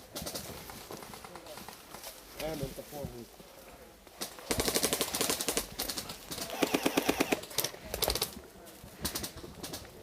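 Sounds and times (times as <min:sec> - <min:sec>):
airsoft guns firing: 0:04.5 - 0:08.3.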